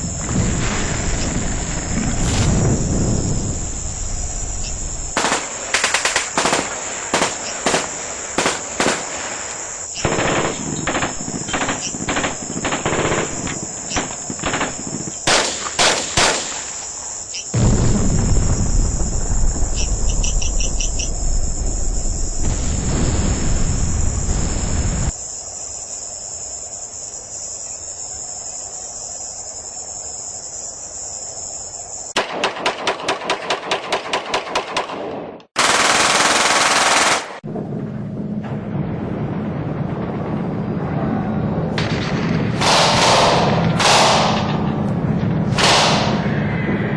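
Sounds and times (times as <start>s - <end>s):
crickets chirping: 0.0s - 37.4s, 43.2s - 46.9s
gunshots: 5.1s - 16.7s, 32.2s - 37.4s, 41.7s - 46.4s
loud low rumble: 17.6s - 25.1s, 37.5s - 42.7s.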